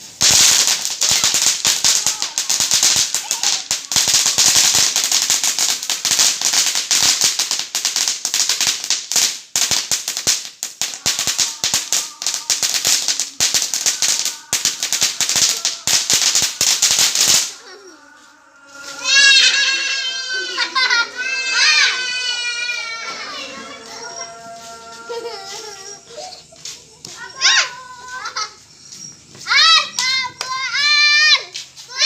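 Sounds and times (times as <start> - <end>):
sharp firework pops: 0.0 - 17.6
firework crackling and hissing: 0.0 - 32.0.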